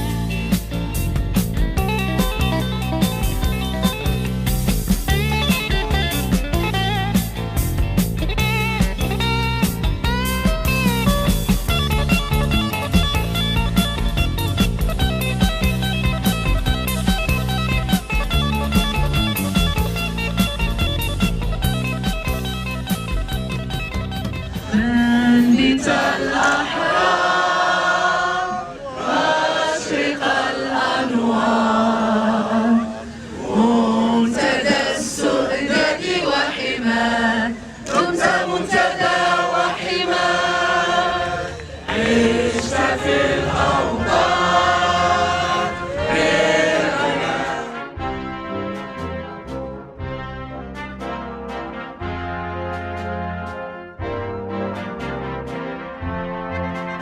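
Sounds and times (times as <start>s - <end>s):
choral singing: 24.6s - 48.0s.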